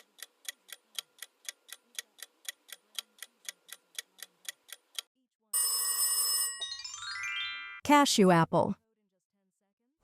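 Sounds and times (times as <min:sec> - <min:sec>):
timer clock ticking: 0:00.0 - 0:05.1.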